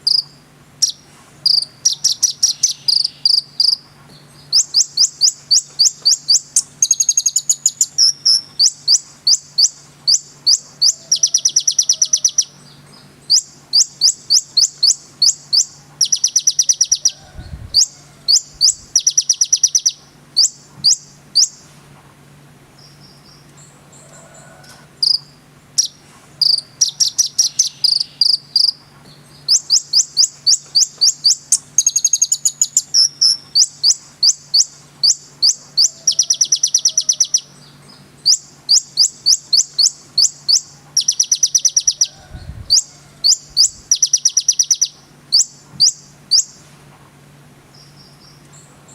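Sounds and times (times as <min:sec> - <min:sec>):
sunbird chipping trills: 0:00.0 - 0:21.7, 0:25.0 - 0:46.6
faint low hum: 0:00.0 - 0:48.9.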